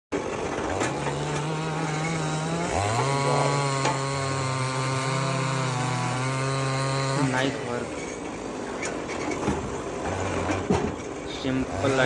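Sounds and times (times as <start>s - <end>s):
chainsaw engine running: 0.2s - 8.5s, 11.6s - 12.0s.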